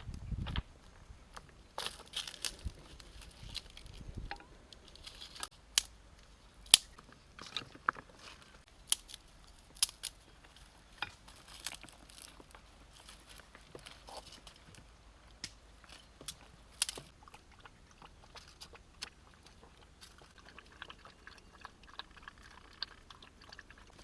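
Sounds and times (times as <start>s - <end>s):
sharp clicks and crunches: 1.3s - 17.1s.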